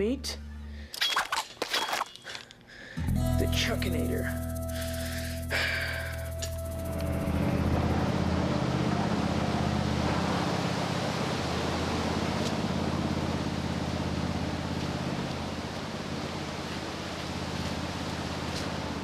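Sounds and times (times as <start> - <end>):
engine humming with hiss: 3.2 - 19.0.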